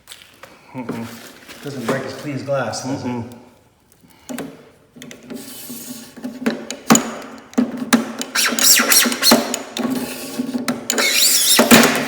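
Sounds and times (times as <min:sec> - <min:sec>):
cutter scraping plexiglass: 0:08.2 - 0:12.0.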